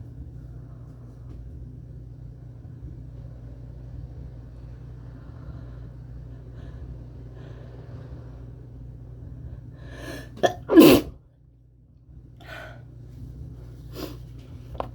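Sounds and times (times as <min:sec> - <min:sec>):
soft breath: 0:05.0 - 0:08.7, 0:09.4 - 0:10.4, 0:12.4 - 0:12.8
catching inhale: 0:09.8 - 0:11.1
person sneezing: 0:10.2 - 0:11.2.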